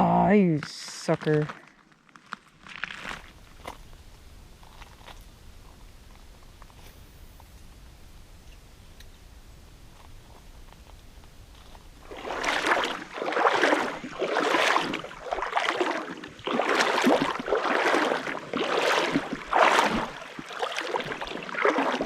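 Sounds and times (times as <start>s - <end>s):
footsteps splashing through water: 0.5s - 3.8s, 11.5s - 22.0s.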